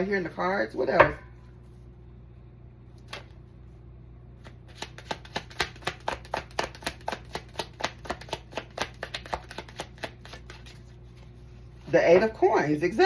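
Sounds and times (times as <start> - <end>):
cards being shuffled: 4.4 - 11.9.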